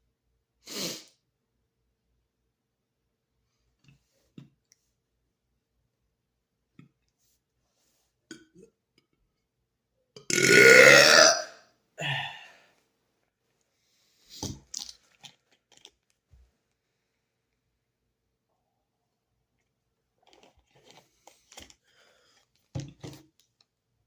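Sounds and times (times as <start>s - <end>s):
man burping: 10.2s - 12.6s.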